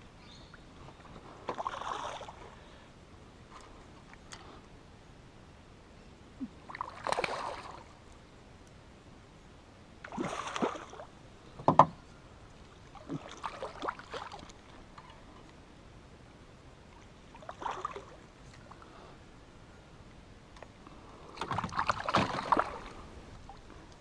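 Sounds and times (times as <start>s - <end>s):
knock on canoe hull: 11.6s - 12.0s
water swishing against canoe: 12.9s - 14.7s, 21.4s - 23.2s.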